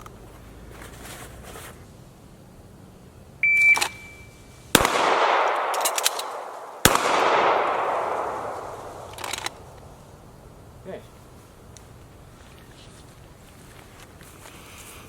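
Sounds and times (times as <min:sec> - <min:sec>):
shot timer beep: 0:03.4 - 0:04.4
handgun shot with echo: 0:04.8 - 0:09.8
handgun reload clicks: 0:05.6 - 0:06.5, 0:09.0 - 0:09.8.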